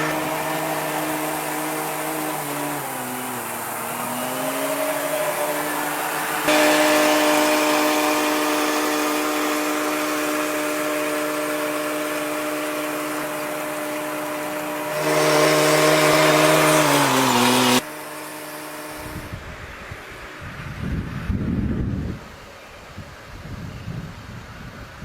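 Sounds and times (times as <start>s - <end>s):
machine motor humming: 0.0s - 17.8s
wind rumble on microphone: 19.0s - 25.0s.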